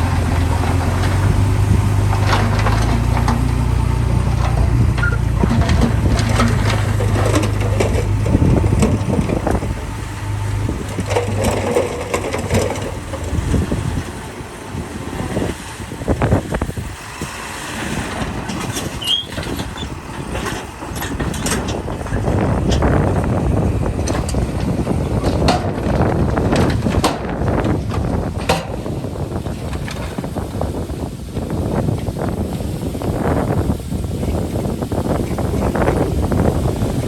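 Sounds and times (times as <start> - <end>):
dirt and rock crunching: 0.0 - 33.8
diesel machine engine drone: 0.0 - 37.0.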